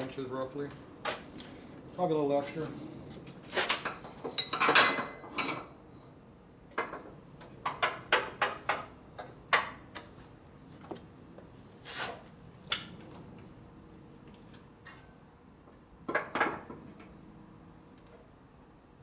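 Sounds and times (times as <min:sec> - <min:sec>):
sharp clicks and knocks: 0:06.8 - 0:10.1.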